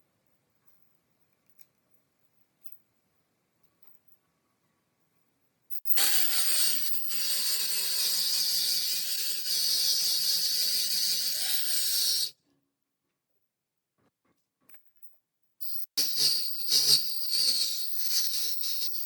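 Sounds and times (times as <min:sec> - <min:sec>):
power tool grinding metal: 0:05.9 - 0:12.3, 0:16.0 - 0:19.0.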